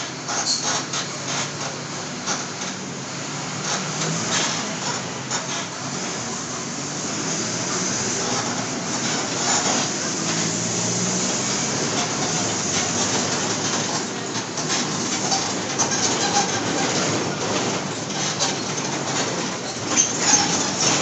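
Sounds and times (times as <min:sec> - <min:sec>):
bus diesel engine drone: 0:00.0 - 0:21.0
road noise: 0:00.0 - 0:21.0.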